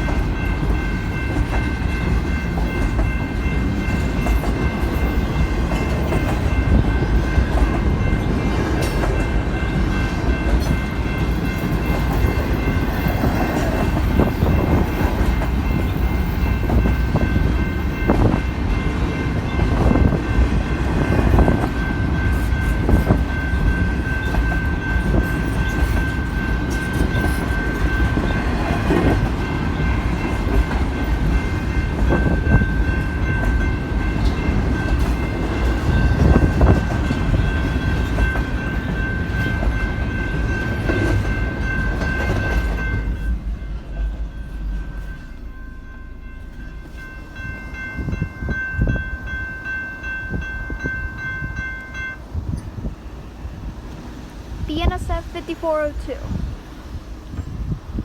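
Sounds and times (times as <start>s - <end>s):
train wheel clacks: 0.0s - 51.2s
freight train rumbling past: 0.0s - 58.0s.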